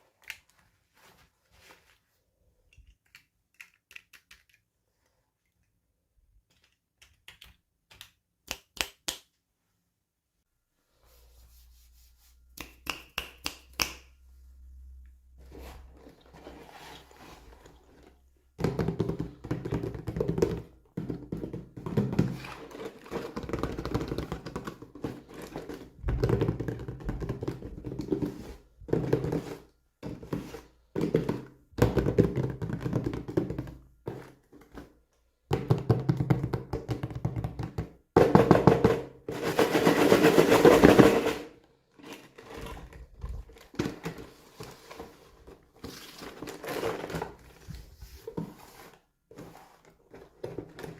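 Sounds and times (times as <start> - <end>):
plastic packaging knocks and taps: 18.6 - 22.4, 23.3 - 25.2, 26.0 - 28.3, 28.9 - 34.9, 35.5 - 39.1.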